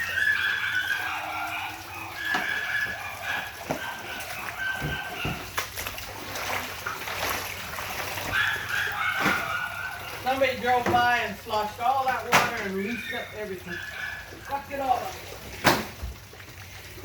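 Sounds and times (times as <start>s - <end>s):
dog whining: 0.0s - 5.6s, 8.3s - 10.4s, 12.6s - 15.0s
floodwater splashing and sloshing: 0.0s - 17.0s
knocks: 4.7s - 5.6s.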